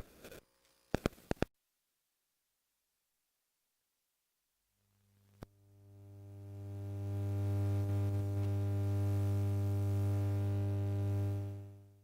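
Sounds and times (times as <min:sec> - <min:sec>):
low electrical hum: 0:04.6 - 0:12.0.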